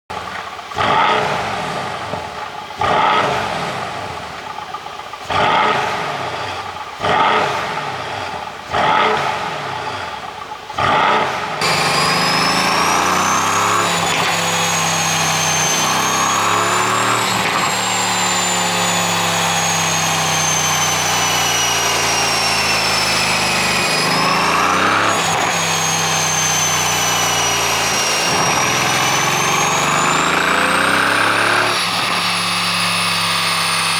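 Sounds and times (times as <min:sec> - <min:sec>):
car engine revving: 0:00.1 - 0:33.9
high whine: 0:11.6 - 0:33.9.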